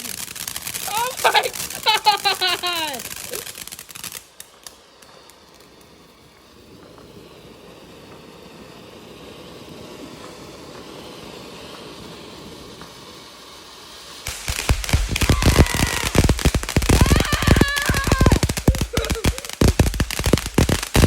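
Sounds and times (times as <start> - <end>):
outdoor background noise: 0.0 - 21.0
faint pops: 14.3 - 21.0.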